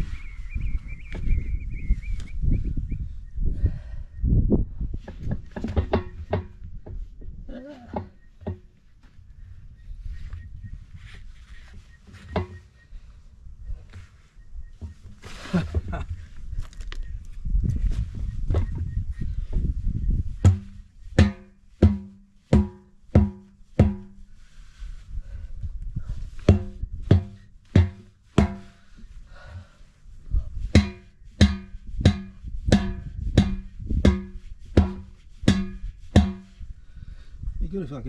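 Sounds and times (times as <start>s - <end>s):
rubber mallet striking tyre: 20.4s - 24.2s, 26.5s - 28.8s, 30.7s - 36.6s.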